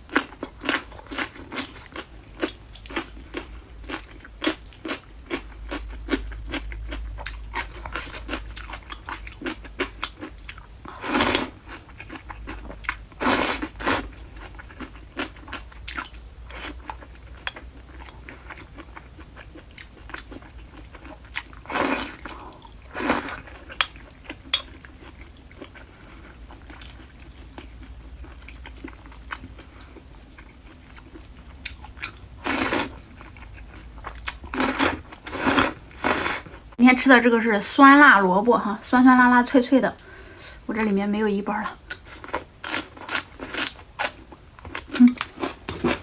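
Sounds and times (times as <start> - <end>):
crunchy biting and chewing: 41.9 - 46.0.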